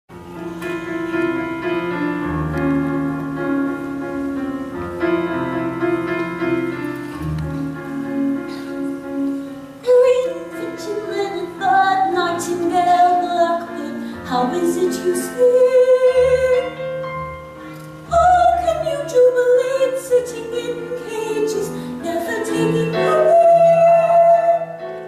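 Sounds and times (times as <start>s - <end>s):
piano chords: 0.1s - 25.0s
woman singing classical style: 9.8s - 17.0s, 18.0s - 25.0s.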